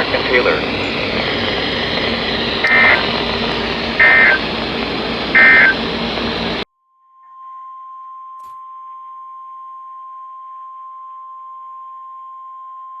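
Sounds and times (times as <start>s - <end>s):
warbling digital data tones: 0.0s - 4.6s, 5.3s - 6.5s
broadcast static hiss: 0.0s - 6.6s
high single tone: 2.6s - 3.2s, 4.0s - 4.5s, 5.4s - 5.9s.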